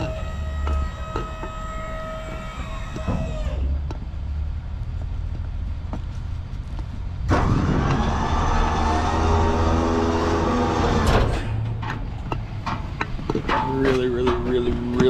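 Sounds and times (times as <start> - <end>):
hydraulic hoist whining: 0.0 - 4.0, 7.2 - 15.0
truck engine idling: 0.0 - 15.0.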